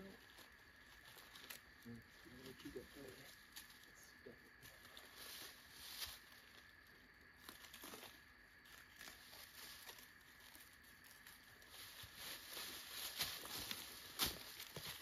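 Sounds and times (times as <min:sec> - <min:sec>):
footsteps through dry leaves: 0:04.6 - 0:06.7, 0:07.4 - 0:15.0.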